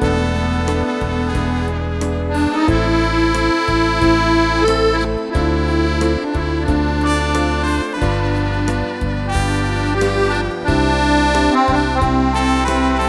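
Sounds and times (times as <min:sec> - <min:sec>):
accordion playing melody: 0:00.0 - 0:13.0.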